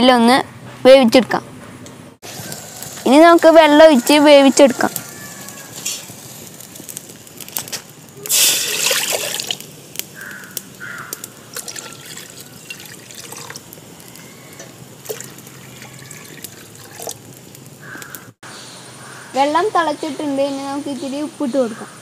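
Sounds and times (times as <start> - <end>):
water pouring into a pot: 8.3 - 9.8, 11.5 - 14.2, 14.9 - 17.3.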